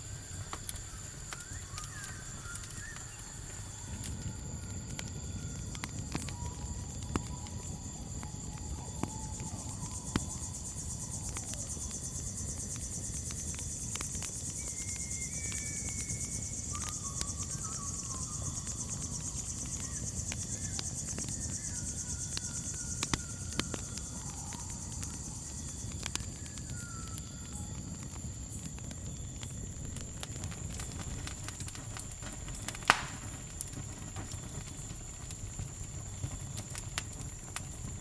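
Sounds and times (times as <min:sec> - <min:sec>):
campfire crackling: 0:00.0 - 0:38.0
crickets chirping: 0:00.0 - 0:38.0
short whistled calls: 0:00.2 - 0:04.3, 0:14.6 - 0:25.3.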